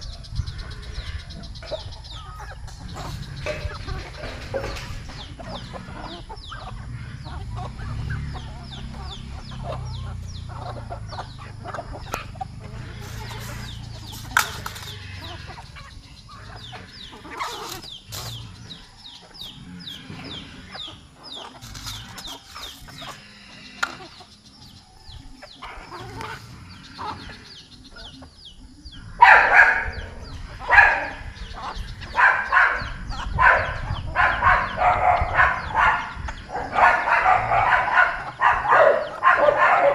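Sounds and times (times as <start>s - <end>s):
chickens clucking and chirping: 0.0s - 39.9s
loud sharp repeated calls: 0.8s - 24.3s, 29.0s - 39.9s.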